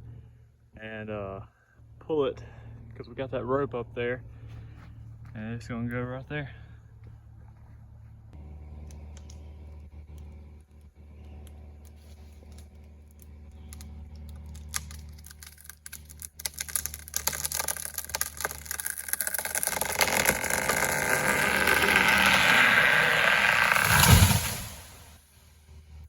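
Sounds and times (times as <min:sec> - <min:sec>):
wood cracking and splitting: 0:11.9 - 0:25.1.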